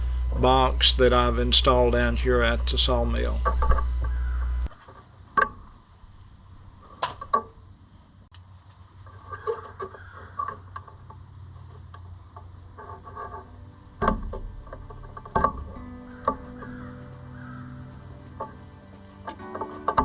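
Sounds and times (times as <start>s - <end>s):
clicks and knocks of wiring work: 0.0s - 4.7s.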